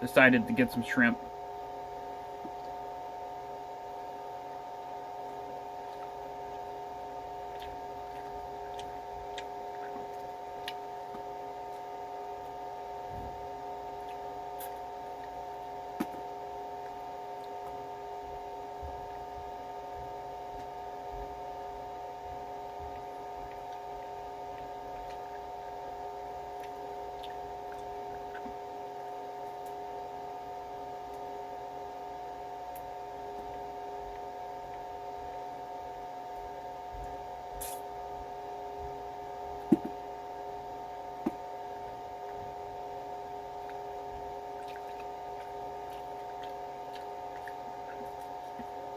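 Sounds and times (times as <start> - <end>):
room noise hum with tones: 0.0 - 48.9.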